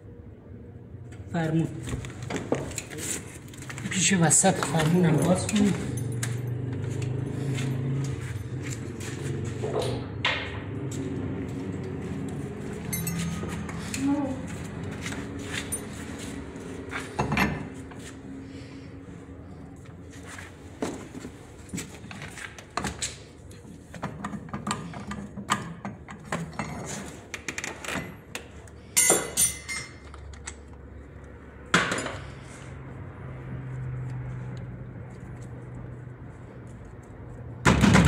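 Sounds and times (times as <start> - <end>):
metal tools clinking: 4.6 - 7.1, 12.8 - 13.6, 29.0 - 30.7.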